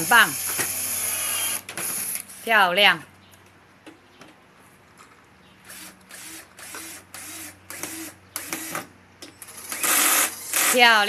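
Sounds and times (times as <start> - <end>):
screwdriver ratchet whirring: 9.4 - 10.8.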